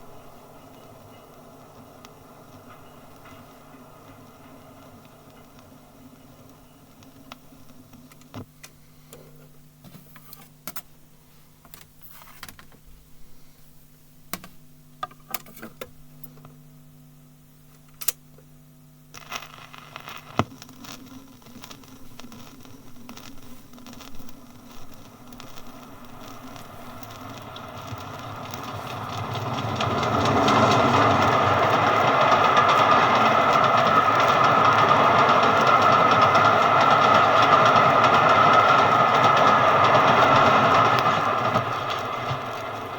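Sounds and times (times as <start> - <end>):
train approaching: 0.0 - 8.2, 22.9 - 42.9
low hum: 0.0 - 9.8, 19.9 - 42.9
faint clicks and crackles: 0.0 - 10.9, 17.4 - 42.9.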